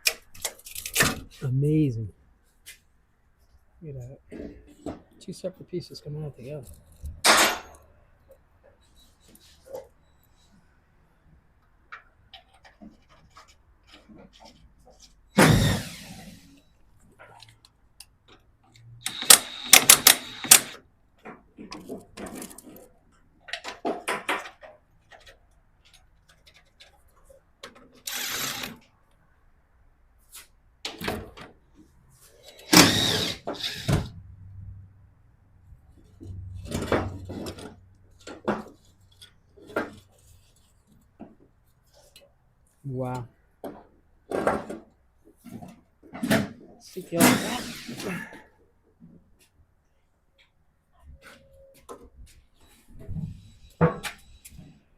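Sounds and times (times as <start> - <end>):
metal clanks of car parts and tools: 7.2 - 7.8.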